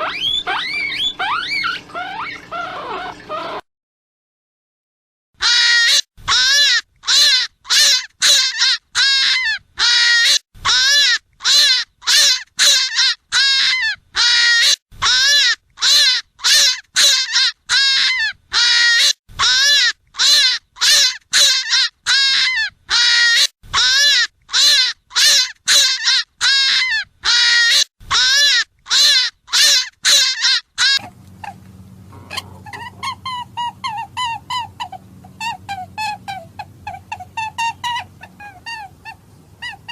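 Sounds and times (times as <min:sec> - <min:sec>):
rabbit distress screams: 0:00.0 - 0:03.6, 0:05.4 - 0:39.9
short high squeaks: 0:00.0 - 0:03.6, 0:27.8 - 0:39.9
low hum: 0:31.0 - 0:39.9.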